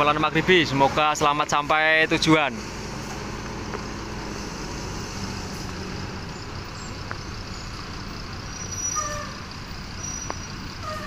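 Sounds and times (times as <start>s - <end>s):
diesel engines idling: 0.0s - 11.0s.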